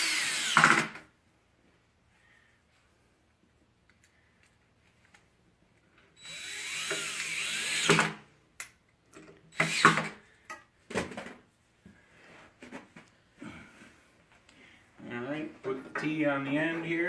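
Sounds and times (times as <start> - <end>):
power drill driving a screw: 0.0 - 1.0, 6.2 - 8.2, 9.5 - 10.2.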